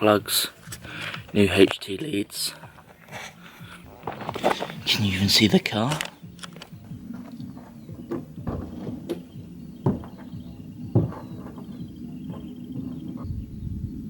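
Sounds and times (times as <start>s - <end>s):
car engine idling unevenly: 0.0s - 13.2s
engine knocks: 2.5s - 13.5s.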